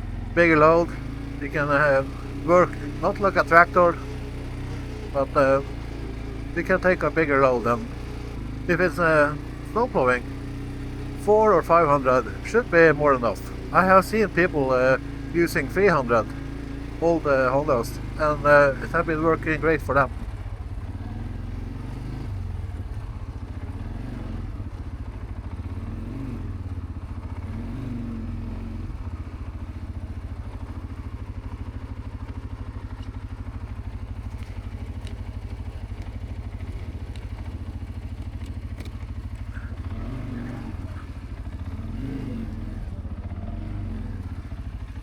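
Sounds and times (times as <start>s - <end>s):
atv engine running: 0.0s - 45.0s
faint clicks: 34.2s - 39.9s.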